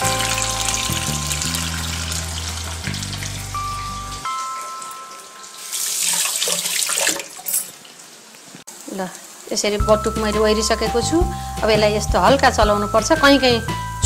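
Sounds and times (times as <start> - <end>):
background music with low notes: 0.0 - 5.7, 9.8 - 14.0
batter sizzling in hot oil: 0.0 - 11.6.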